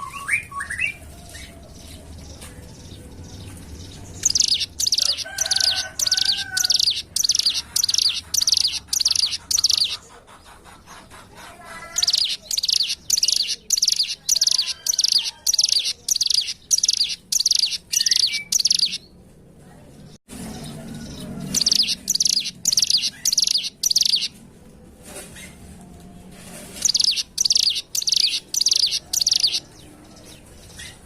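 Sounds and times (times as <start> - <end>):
bird singing rapid high notes: 4.2 - 10.0, 12.0 - 19.0, 21.5 - 24.3, 26.8 - 29.6.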